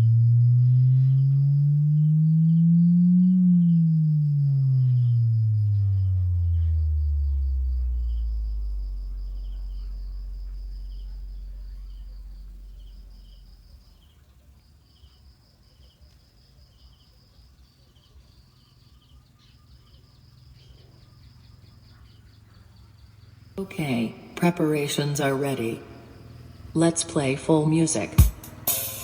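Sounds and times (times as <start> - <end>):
low bass tone sliding downward: 0.0 - 14.0
faint crickets chirping: 0.0 - 29.0.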